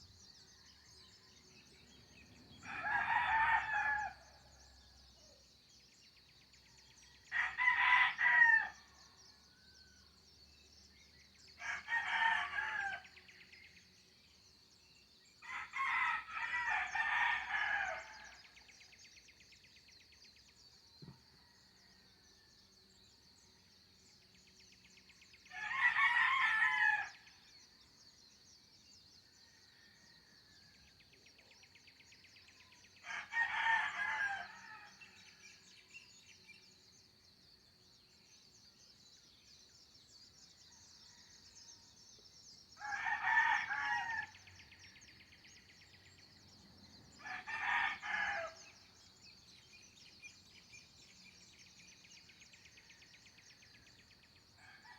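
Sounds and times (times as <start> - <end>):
roosters crowing: 2.6 - 4.3, 11.6 - 13.0, 15.4 - 18.4, 25.5 - 27.2, 33.0 - 34.9, 42.8 - 44.5, 47.2 - 48.6.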